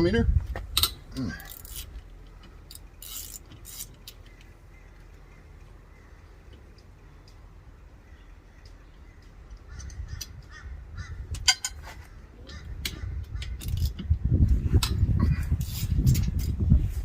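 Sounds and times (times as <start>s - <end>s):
socket wrench clicking: 0.7s - 4.5s.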